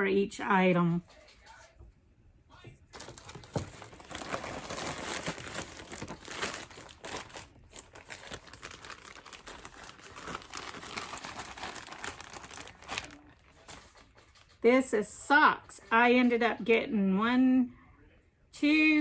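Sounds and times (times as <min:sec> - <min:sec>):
packaging crinkling and rustling: 0:03.0 - 0:14.6.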